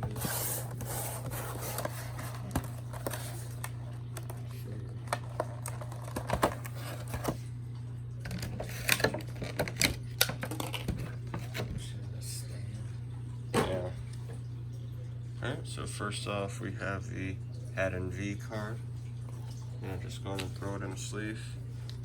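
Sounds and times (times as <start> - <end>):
steady low hum: 0.0 - 22.0
cardboard box being unpacked: 5.0 - 7.4.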